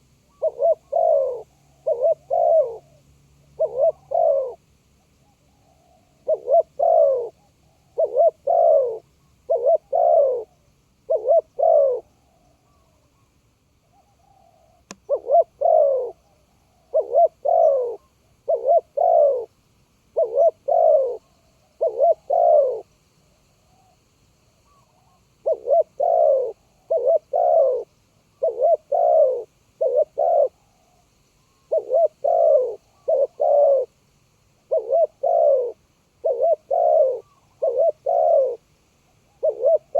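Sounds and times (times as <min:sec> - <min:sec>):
dove cooing: 0:00.0 - 0:04.6, 0:05.2 - 0:13.0, 0:13.9 - 0:19.5, 0:20.1 - 0:22.9, 0:24.7 - 0:34.0, 0:34.6 - 0:38.7, 0:39.3 - 0:39.9.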